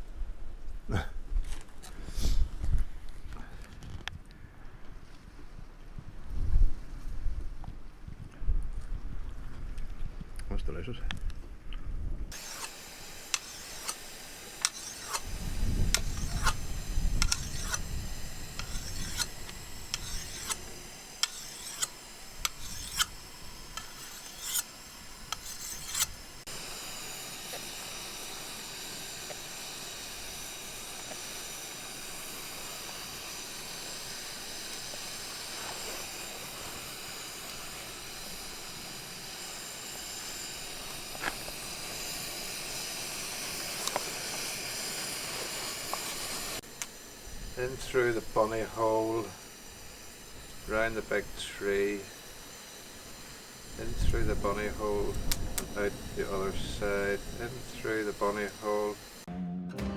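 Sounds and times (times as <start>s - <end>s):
steady hiss: 12.3s - 59.3s.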